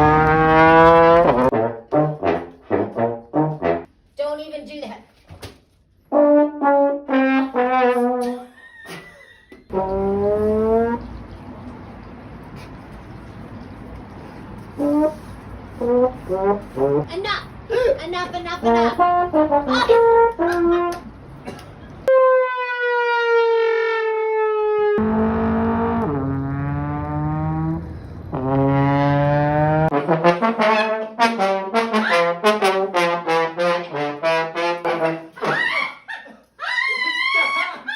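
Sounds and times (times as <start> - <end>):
brass-like horn tones: 0.0 - 3.9, 6.1 - 8.4, 9.7 - 11.1, 14.7 - 17.1, 18.6 - 21.1, 22.1 - 35.5.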